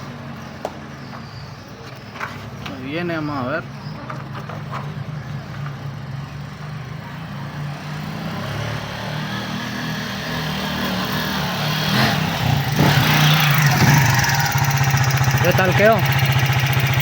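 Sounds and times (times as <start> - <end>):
motorcycle engine running: 11.4 - 17.0.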